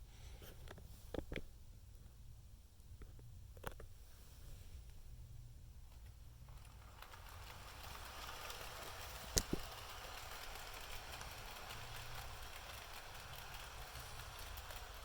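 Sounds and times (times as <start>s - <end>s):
model train motor hum: 6.3s - 15.0s.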